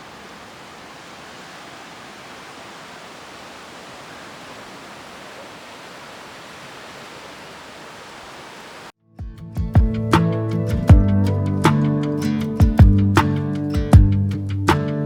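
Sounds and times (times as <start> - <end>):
surf on a beach: 0.0 - 8.9
plucked acoustic guitar music: 9.2 - 15.0.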